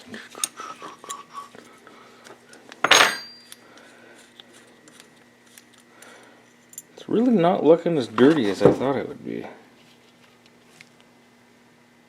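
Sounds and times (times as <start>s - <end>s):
metal parts and tools clinking: 2.8s - 3.6s.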